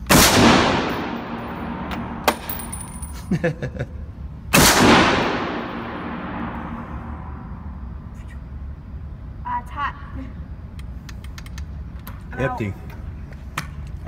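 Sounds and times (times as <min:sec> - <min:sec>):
rifle shots with echoing tail: 0:00.1 - 0:02.6, 0:04.5 - 0:07.3.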